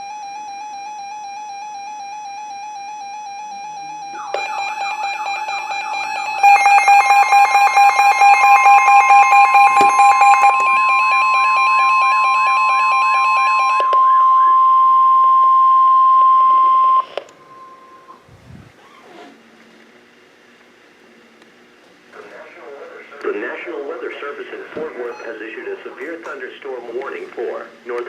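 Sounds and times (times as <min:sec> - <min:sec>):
steady warning alarm tone: 0:00.0 - 0:18.2
rapid even beeping: 0:04.0 - 0:14.6
warbling alert tone: 0:04.2 - 0:14.3.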